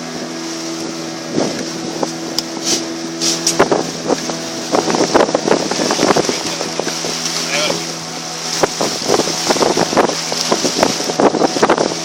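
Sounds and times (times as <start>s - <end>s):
boat motor running: 0.0s - 12.0s
hull knocking on waves: 1.3s - 12.0s.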